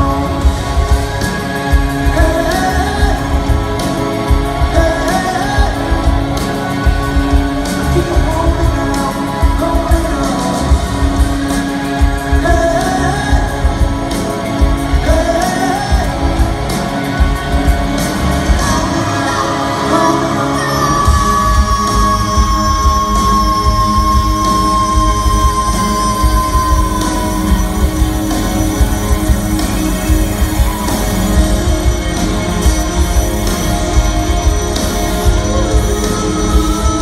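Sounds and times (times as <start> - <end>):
heavy low drum beat: 0.0 - 37.0
live rock band droning song: 0.0 - 37.0
person singing: 0.0 - 37.0.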